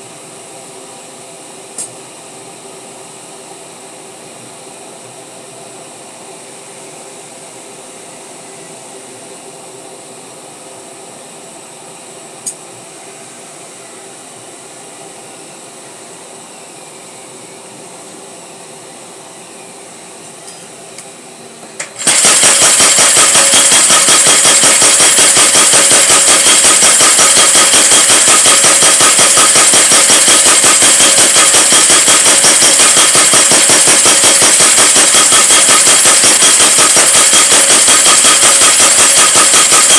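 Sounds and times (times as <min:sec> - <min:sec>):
power hammer blows: 0:21.8 - 0:39.9
power hammer motor humming: 0:21.8 - 0:39.9.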